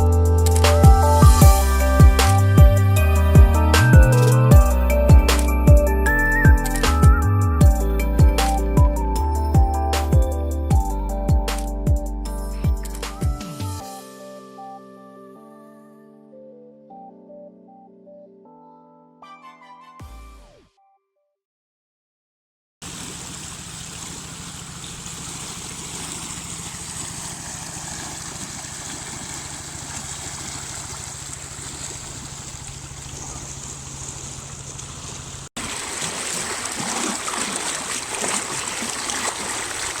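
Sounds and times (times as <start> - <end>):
river water rushing and splashing: 22.8 - 40.0.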